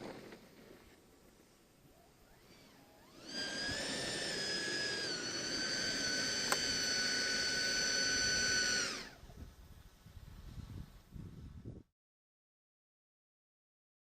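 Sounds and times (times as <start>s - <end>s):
electric ducted fan whining: 1.7s - 9.7s.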